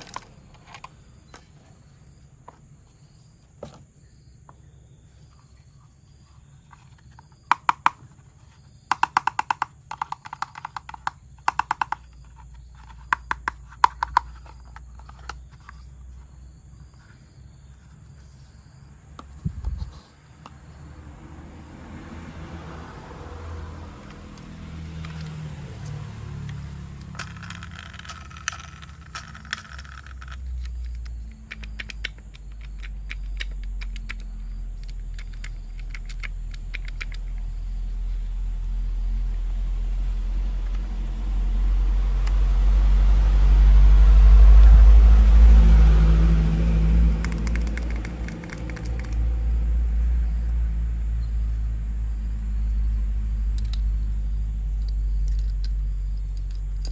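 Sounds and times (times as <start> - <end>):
plastic toy pieces clicking and rattling: 0.0 - 0.9, 8.9 - 15.8, 27.0 - 37.4, 47.2 - 49.2, 54.8 - 56.9.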